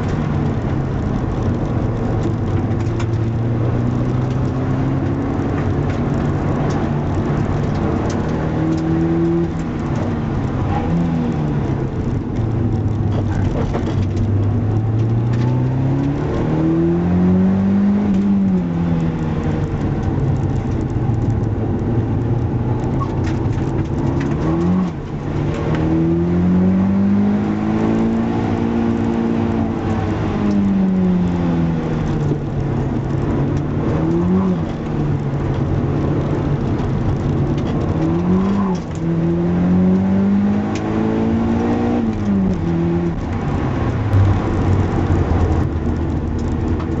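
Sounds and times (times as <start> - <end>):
race car engine revving: 0.0 - 47.0
road and wind noise: 0.0 - 47.0.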